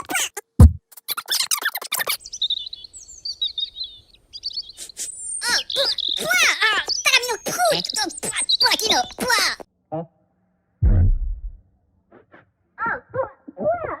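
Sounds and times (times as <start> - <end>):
birds chirping: 1.1 - 9.7
squeaky chattering voices: 4.7 - 9.6.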